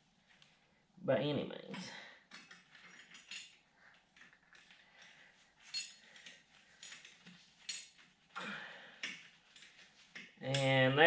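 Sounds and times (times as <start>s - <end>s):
metallic clinks of steel parts: 2.3s - 3.6s, 4.2s - 8.1s.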